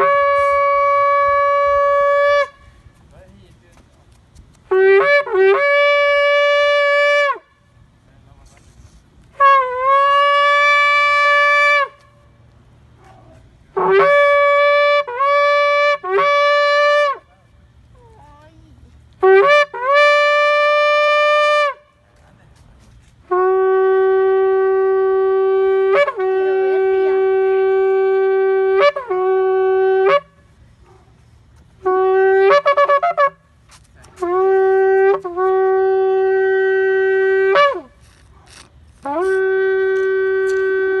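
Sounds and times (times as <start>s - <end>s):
shofar blasts: 0.0s - 3.0s, 4.6s - 7.8s, 9.3s - 12.4s, 13.7s - 17.3s, 19.2s - 22.0s, 23.2s - 30.6s, 31.8s - 41.0s.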